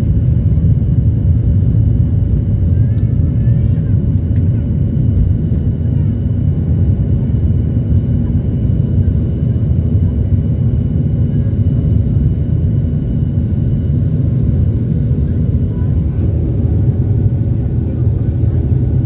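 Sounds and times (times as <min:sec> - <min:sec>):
jet engines rumbling: 0:00.0 - 0:19.0.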